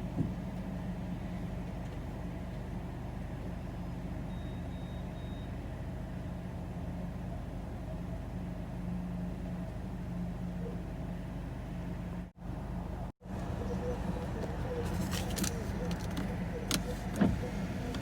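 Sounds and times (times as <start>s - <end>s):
car engine idling: 8.8s - 18.0s.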